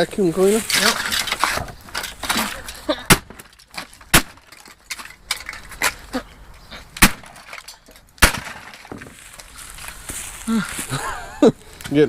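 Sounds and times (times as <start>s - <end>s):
plastic cracking and breaking: 0.7s - 6.0s, 7.0s - 10.0s
sledgehammer striking plastic: 3.1s - 4.6s, 7.0s - 9.2s.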